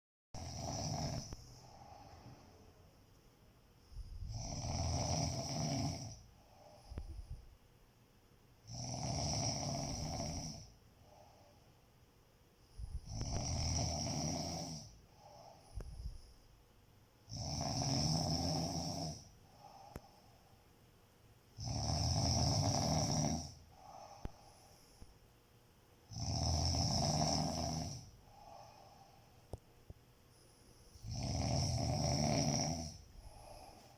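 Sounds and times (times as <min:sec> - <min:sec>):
person snoring: 0:00.4 - 0:02.5, 0:03.9 - 0:07.4, 0:08.6 - 0:11.6, 0:12.8 - 0:16.2, 0:17.2 - 0:20.1, 0:21.6 - 0:24.7, 0:26.1 - 0:29.3, 0:30.9 - 0:33.9.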